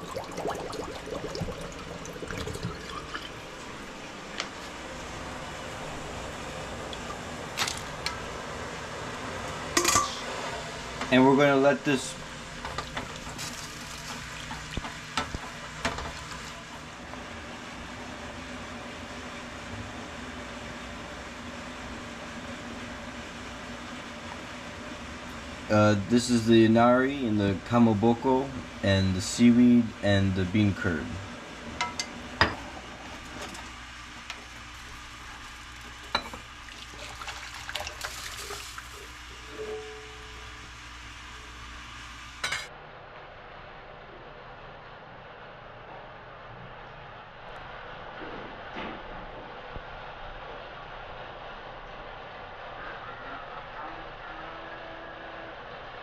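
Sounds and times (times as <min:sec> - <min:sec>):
low hiss and hum: 0:00.0 - 0:56.0
pot hissing on stove: 0:31.8 - 0:42.4.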